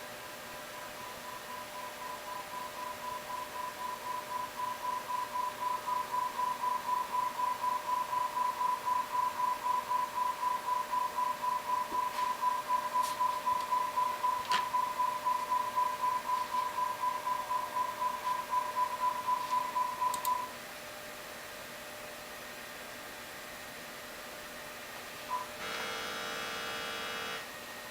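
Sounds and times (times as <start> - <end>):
steady test tone: 0.6 - 20.5
faint clicks: 20.1 - 20.4.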